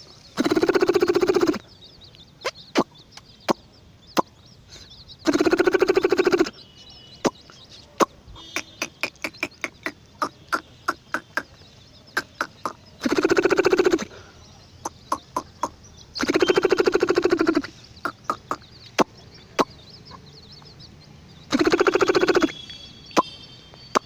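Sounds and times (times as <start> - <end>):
faint high chirping: 0.0 - 24.0
loud wavering animal call: 5.2 - 6.6, 12.4 - 14.1, 15.1 - 18.6, 21.5 - 22.5.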